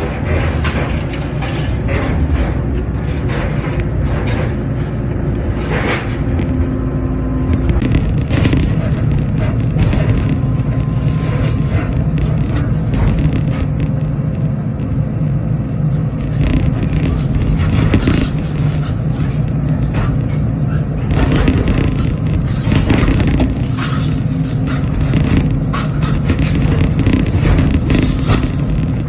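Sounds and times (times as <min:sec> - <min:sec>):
excavator diesel engine running: 0:00.0 - 0:29.0
concrete debris crunching: 0:07.5 - 0:14.9, 0:15.8 - 0:29.0.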